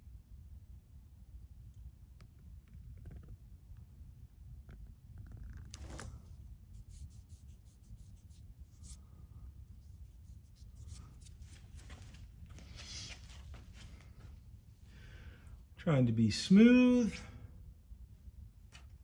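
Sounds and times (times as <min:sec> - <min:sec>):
soft handling rubbing: 0:05.8 - 0:09.1, 0:09.7 - 0:14.5.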